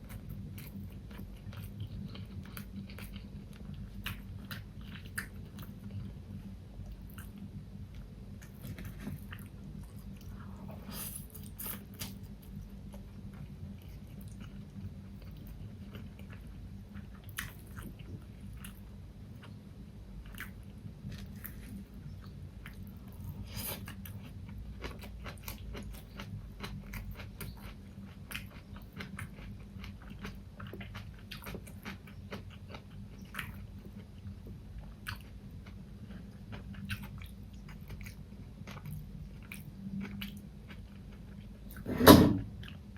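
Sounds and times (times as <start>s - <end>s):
mouth chewing crunchy food: 0.0s - 19.6s, 20.2s - 41.9s.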